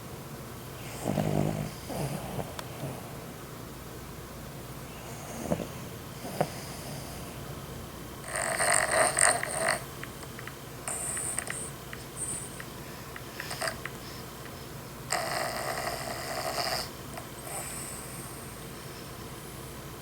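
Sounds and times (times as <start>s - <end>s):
dog snoring: 0.8s - 3.1s, 5.0s - 7.4s, 8.2s - 9.9s, 10.8s - 12.6s, 13.4s - 13.8s, 15.1s - 18.6s.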